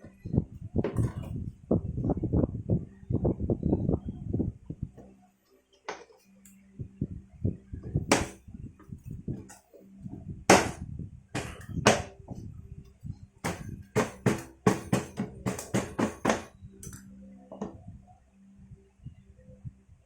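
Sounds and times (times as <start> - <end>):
faint steady hum: 0.0 - 20.0
tools and metal parts knocking: 0.8 - 1.4, 11.4 - 12.2, 13.4 - 17.8.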